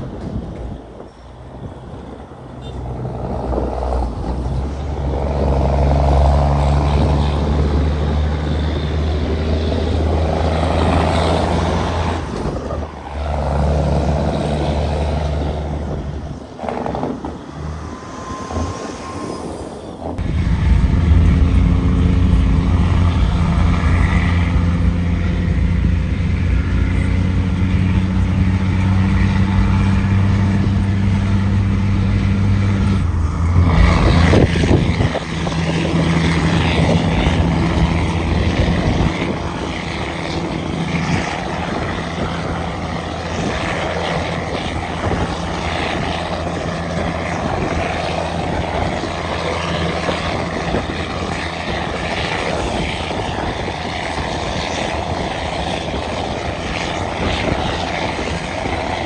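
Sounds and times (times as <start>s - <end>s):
diesel truck engine running: 0.0s - 59.0s.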